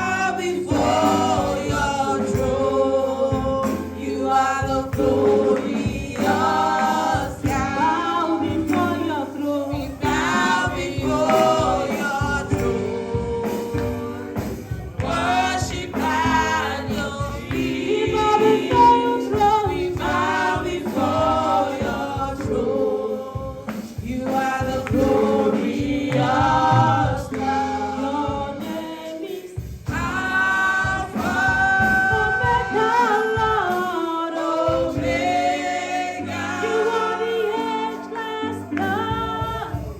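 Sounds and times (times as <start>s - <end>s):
choir singing gospel music: 0.0s - 39.9s.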